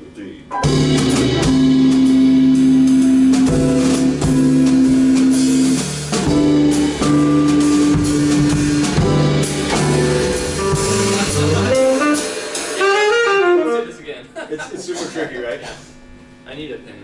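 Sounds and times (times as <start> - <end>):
live band playing slow ballad: 0.5 - 13.9.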